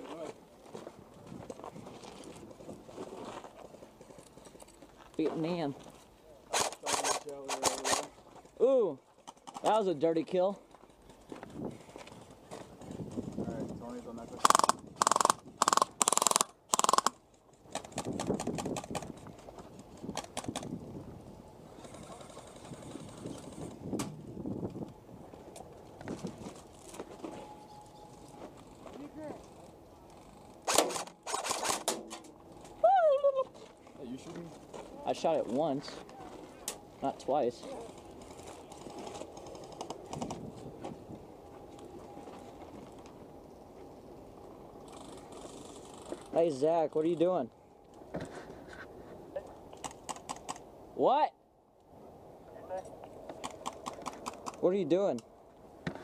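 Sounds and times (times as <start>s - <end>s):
footsteps crunching: 0.0s - 6.2s.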